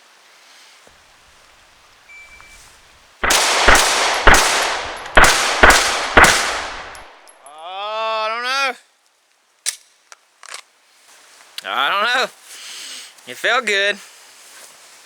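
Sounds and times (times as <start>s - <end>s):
pistol shots with echo: 3.2s - 7.3s.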